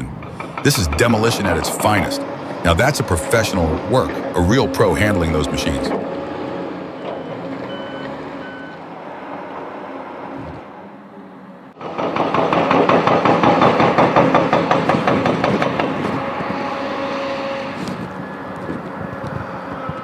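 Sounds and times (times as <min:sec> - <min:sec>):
machine rattling rhythm: 0:00.0 - 0:06.2
heavy machinery running: 0:00.0 - 0:10.3, 0:11.7 - 0:20.0
short beeps: 0:07.2 - 0:08.8.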